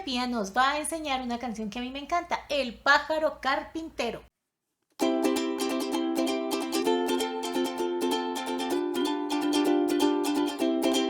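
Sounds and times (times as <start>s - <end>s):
ukulele strumming: 5.0s - 11.0s.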